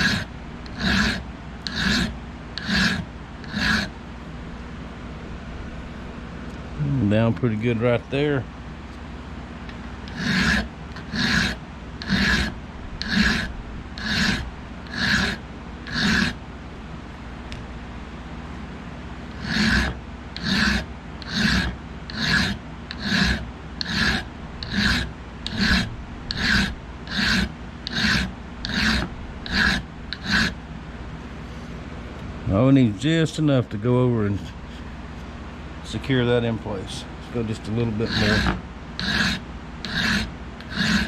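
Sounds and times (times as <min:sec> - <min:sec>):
file rasping on metal: 0:00.0 - 0:03.9, 0:10.0 - 0:16.4, 0:19.3 - 0:30.6, 0:37.4 - 0:41.0.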